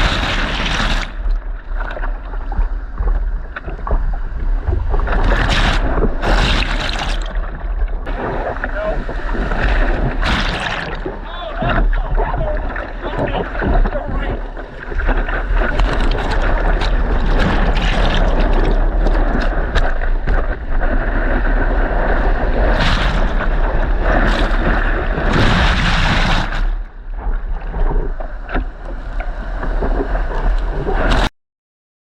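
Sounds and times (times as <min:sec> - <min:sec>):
wind rumbling on microphone: 0:00.0 - 0:31.3
lake surf splashing: 0:04.8 - 0:26.8.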